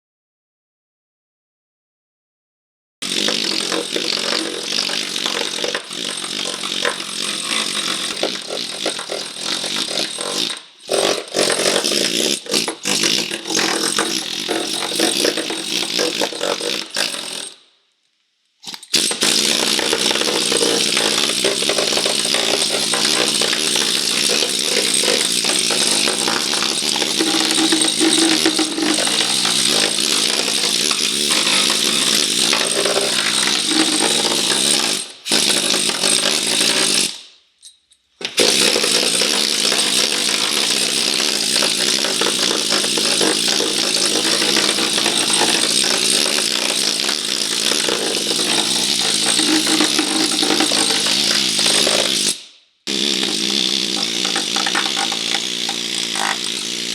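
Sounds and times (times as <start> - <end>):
power grinder on metal: 3.0 - 17.6, 18.6 - 37.1, 38.2 - 56.9.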